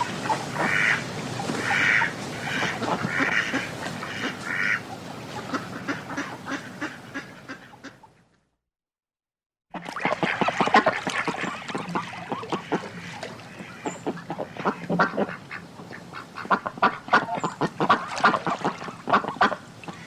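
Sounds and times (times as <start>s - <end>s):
splashing in water: 0.0s - 7.8s, 9.7s - 20.0s
ducks quacking: 0.0s - 8.3s, 9.8s - 20.0s.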